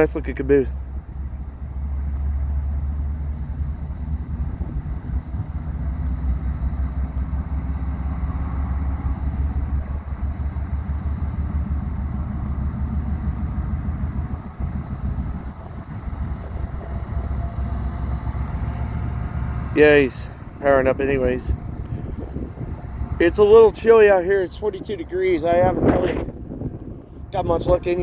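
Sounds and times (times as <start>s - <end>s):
locomotive diesel engine rumbling: 0.0s - 28.0s.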